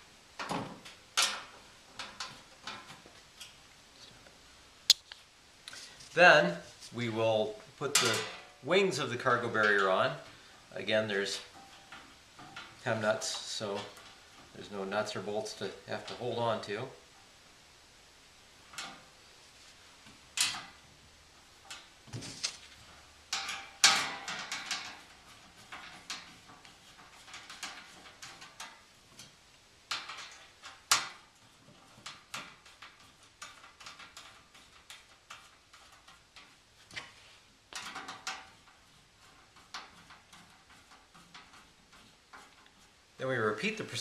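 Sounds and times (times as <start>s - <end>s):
metal parts clanking and clicking: 7.9s - 8.5s, 22.7s - 29.3s.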